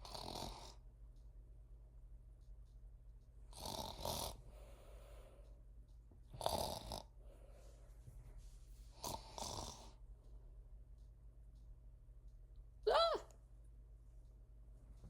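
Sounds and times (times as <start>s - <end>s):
loud snoring: 0.0s - 0.8s, 3.5s - 4.4s, 6.4s - 7.1s, 9.0s - 10.0s.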